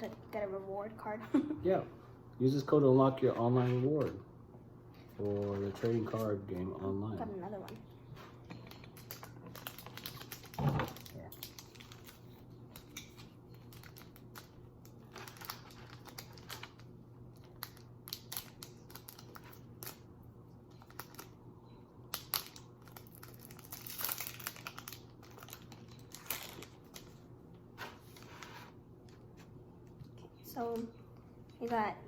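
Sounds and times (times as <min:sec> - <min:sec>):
cards rustling and clicking: 0:05.0 - 0:06.7
foil pack crinkling: 0:05.0 - 0:06.7, 0:08.4 - 0:20.1, 0:20.7 - 0:21.4, 0:22.1 - 0:27.3.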